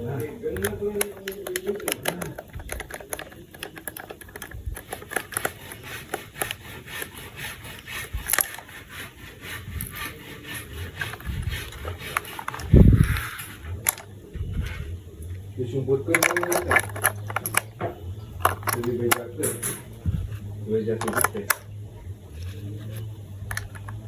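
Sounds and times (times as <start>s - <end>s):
plastic toy parts clicking: 0.2s - 9.0s, 10.8s - 14.8s, 16.0s - 19.9s, 21.0s - 21.7s, 22.4s - 24.0s.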